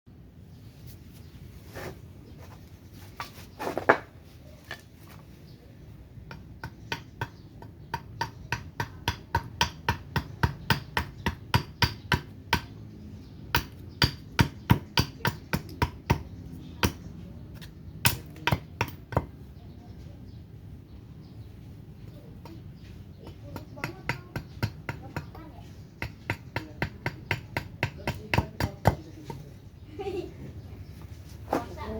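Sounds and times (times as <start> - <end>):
axe chopping wood: 13.6 - 17.0, 17.6 - 19.4.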